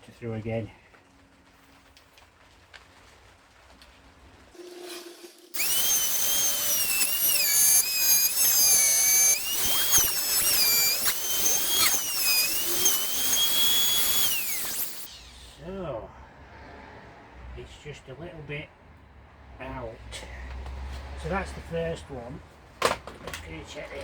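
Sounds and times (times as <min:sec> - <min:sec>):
router whining cutting wood: 0:04.8 - 0:15.3.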